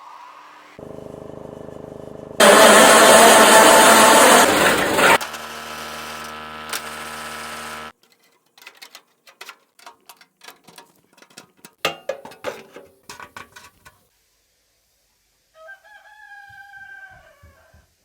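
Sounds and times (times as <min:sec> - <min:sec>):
forage cutter humming: 0:00.8 - 0:07.9.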